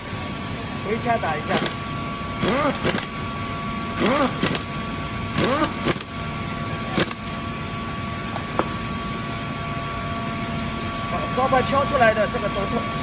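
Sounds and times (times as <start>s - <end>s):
steady hum with faint tone: 0.0s - 13.0s
impact wrench bursts: 1.3s - 7.5s.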